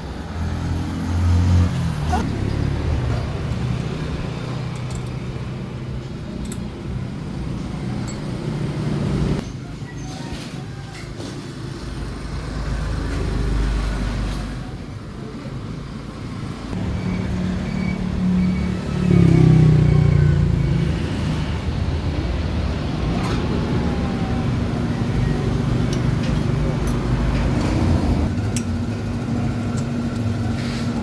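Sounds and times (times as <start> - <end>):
motorcycle engine revving: 0.6 - 5.4, 16.8 - 31.0.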